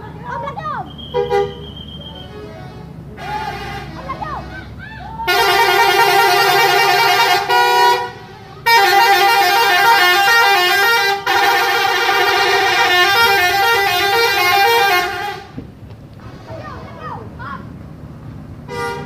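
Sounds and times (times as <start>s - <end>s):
multi-tone musical bus horn: 0.9s - 15.7s, 18.6s - 19.0s.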